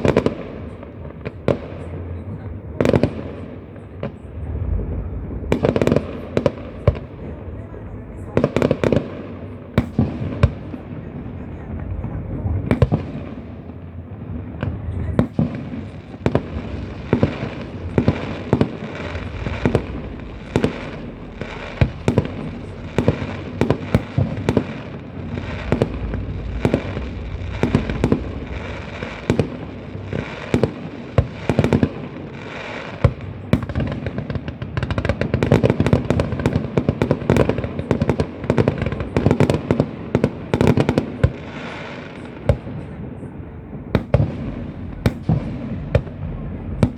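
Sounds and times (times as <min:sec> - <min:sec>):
fireworks bangs and crackling: 0:00.0 - 0:46.9.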